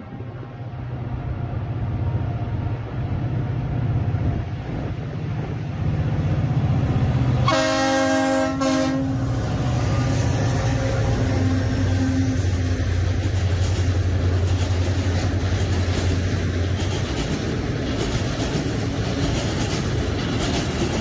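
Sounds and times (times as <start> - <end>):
train wagons rumbling on rails: 0.0 - 21.0
train horn blast: 7.4 - 12.8.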